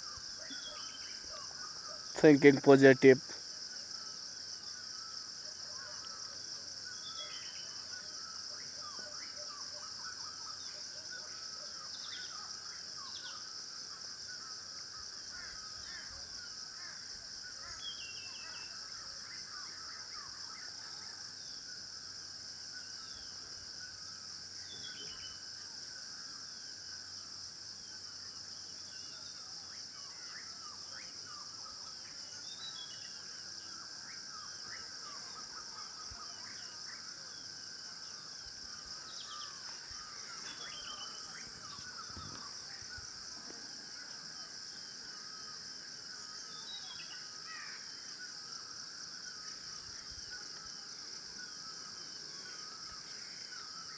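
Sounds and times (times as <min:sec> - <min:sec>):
insects droning: 0:00.0 - 0:53.9
small birds chirping: 0:38.8 - 0:43.1.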